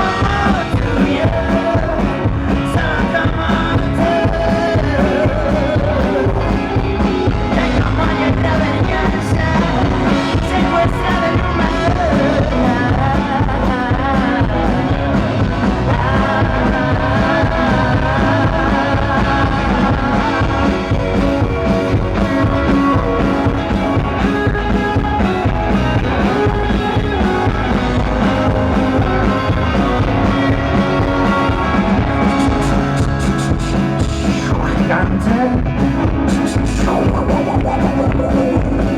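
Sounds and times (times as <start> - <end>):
rock band playing live: 0.0 - 38.9.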